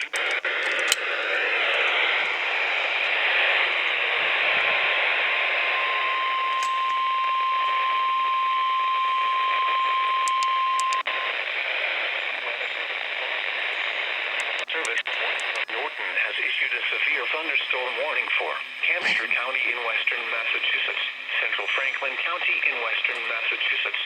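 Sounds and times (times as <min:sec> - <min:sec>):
steady alarm tone: 0:00.0 - 0:11.1
radio static hiss: 0:00.0 - 0:24.0
click: 0:06.5 - 0:07.0, 0:10.2 - 0:11.1.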